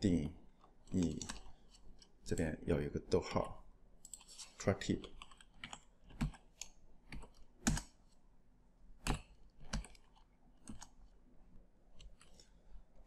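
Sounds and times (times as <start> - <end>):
keyboard typing: 0.8 - 2.1, 5.0 - 8.2, 9.0 - 11.1.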